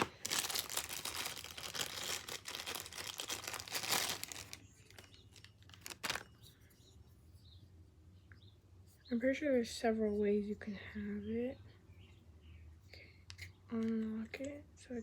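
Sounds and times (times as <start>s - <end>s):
packaging crinkling: 0.0s - 6.4s.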